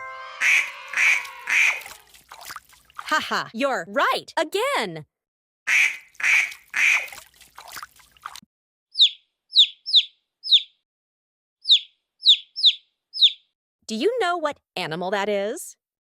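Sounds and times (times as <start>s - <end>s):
duck quacking: 0.0s - 2.0s, 5.7s - 7.1s
small bird chirping: 8.9s - 10.9s, 11.6s - 13.6s.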